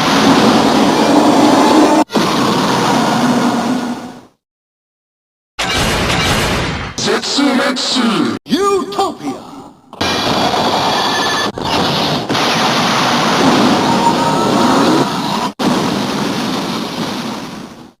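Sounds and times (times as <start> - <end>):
rushing rumbling blast: 0.0 - 4.1, 10.1 - 17.9.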